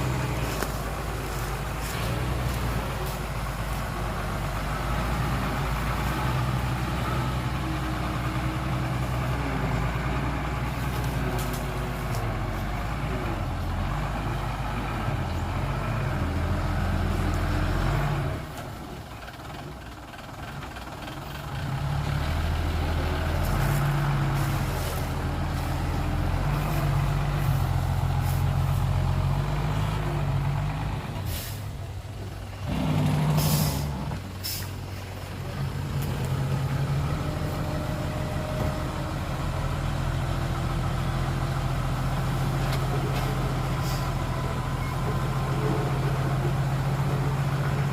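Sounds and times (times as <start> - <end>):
dump truck diesel engines: 0.0 - 47.9
air brakes hissing: 31.2 - 31.9, 33.2 - 34.8, 43.7 - 44.3.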